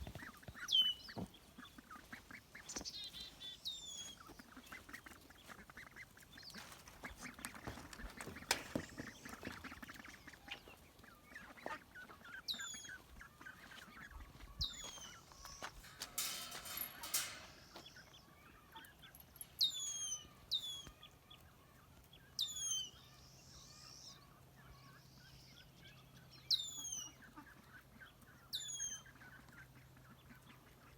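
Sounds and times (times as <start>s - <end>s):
rustling and scuffling: 0.0s - 10.8s, 13.6s - 18.0s
ducklings peeping: 0.0s - 16.2s, 16.8s - 30.9s.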